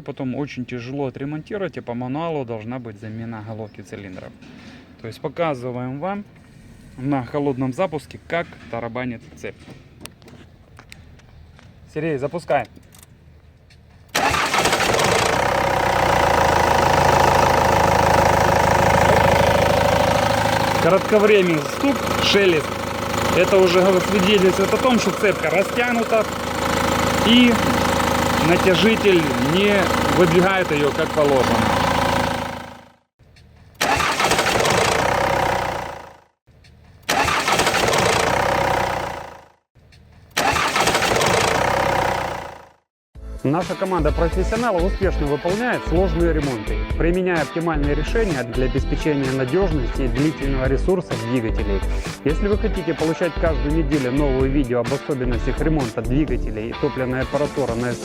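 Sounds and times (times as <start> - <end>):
diesel engine idling: 14.2 - 33.0, 33.8 - 36.2, 37.1 - 39.4, 40.4 - 42.7.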